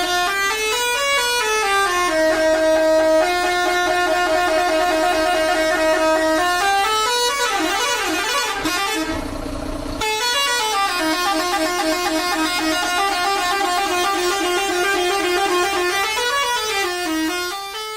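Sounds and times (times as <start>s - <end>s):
truck horn playing a tune: 0.0s - 17.9s.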